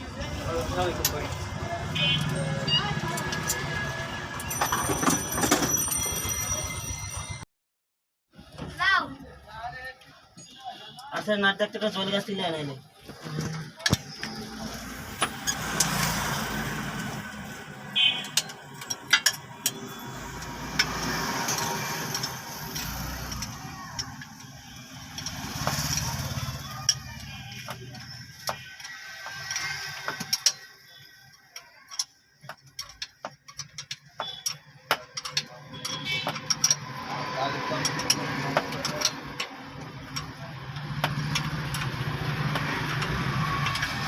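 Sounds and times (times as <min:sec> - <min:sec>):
metallic clicks and knocks of hand tools: 0:18.1 - 0:26.1, 0:26.8 - 0:30.8, 0:31.5 - 0:37.1, 0:37.8 - 0:44.0.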